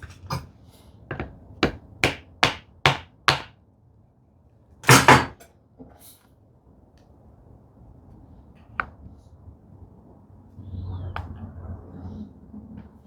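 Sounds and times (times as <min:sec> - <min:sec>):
hammer tapping on plane: 0:01.1 - 0:03.5.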